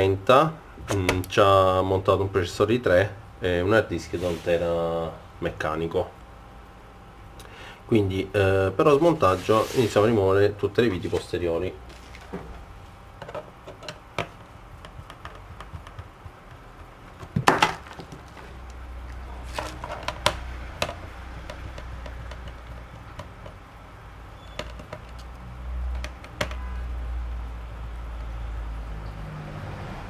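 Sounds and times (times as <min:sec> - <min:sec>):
clatter of plastic knocks: 0:13.2 - 0:18.7, 0:19.5 - 0:23.7, 0:24.4 - 0:26.8.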